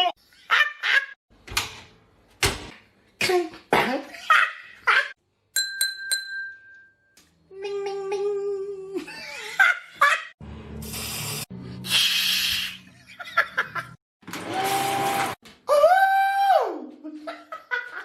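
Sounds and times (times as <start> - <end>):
clinking ding: 5.6 - 7.2.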